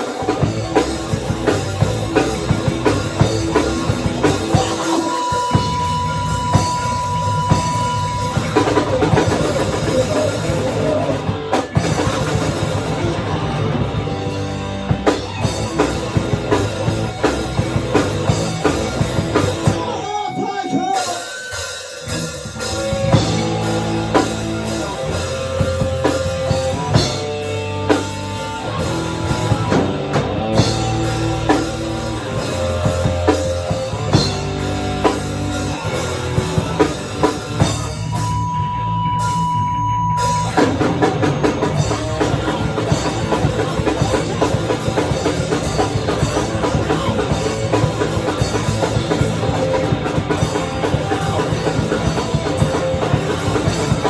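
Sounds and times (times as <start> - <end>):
heavy rock band playing: 0.0 - 54.0
steady high tone: 2.8 - 12.5, 28.4 - 54.0.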